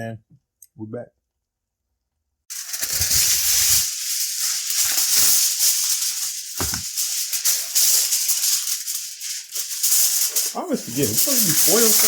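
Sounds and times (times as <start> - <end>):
aluminium foil crinkling: 2.5 - 12.0.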